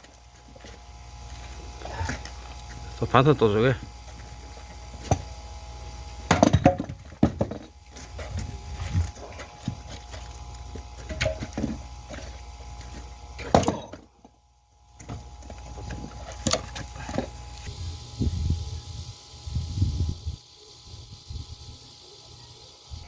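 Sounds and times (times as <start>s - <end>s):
axe splitting firewood: 0.0s - 14.4s, 15.0s - 17.6s.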